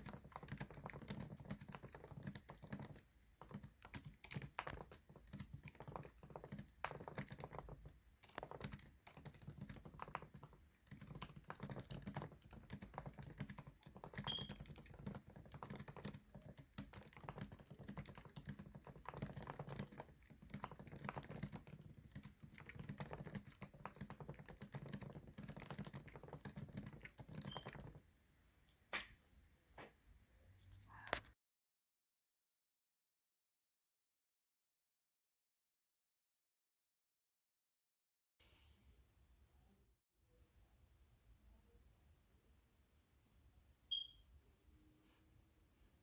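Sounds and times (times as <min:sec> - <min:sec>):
fast keyboard typing: 0:00.0 - 0:28.0.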